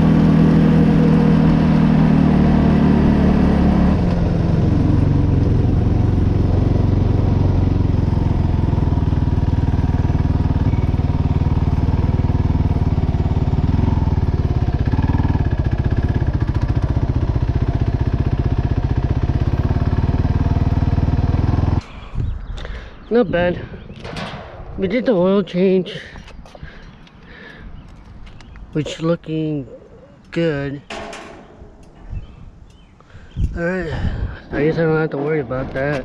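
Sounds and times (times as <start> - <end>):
atv engine idling: 3.9 - 21.8.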